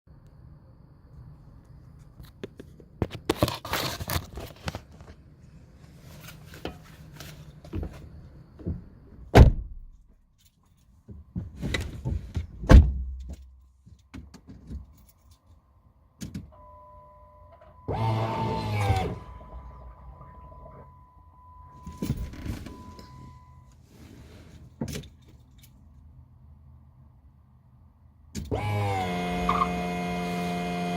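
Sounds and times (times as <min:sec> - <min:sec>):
heavy thunks: 0:08.6 - 0:09.9, 0:11.1 - 0:13.5.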